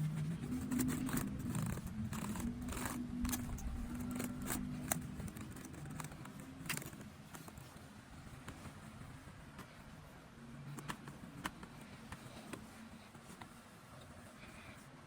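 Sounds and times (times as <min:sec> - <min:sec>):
low hum: 0:00.0 - 0:12.0
cloth wiping laptop casing: 0:00.0 - 0:15.0.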